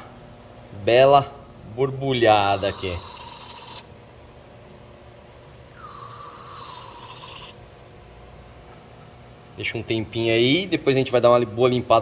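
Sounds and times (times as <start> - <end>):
aerosol spray hissing: 2.4 - 3.8.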